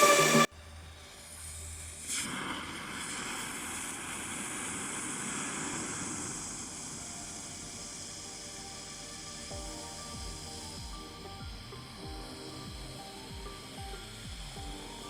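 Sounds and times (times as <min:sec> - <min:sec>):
electronic music: 0:00.0 - 0:00.5, 0:07.2 - 0:15.0
firework hissing: 0:00.0 - 0:15.0.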